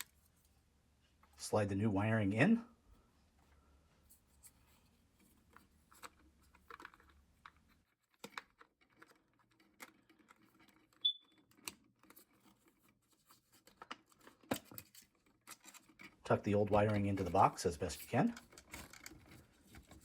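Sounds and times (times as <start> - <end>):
smoke alarm chirp: 11.0 - 11.3.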